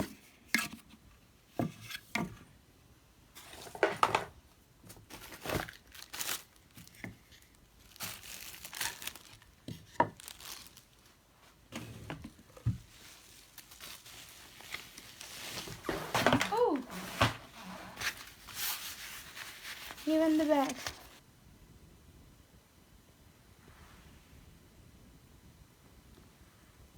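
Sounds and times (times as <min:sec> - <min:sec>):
packaging crinkling and tearing: 0:04.9 - 0:11.2, 0:12.8 - 0:21.2.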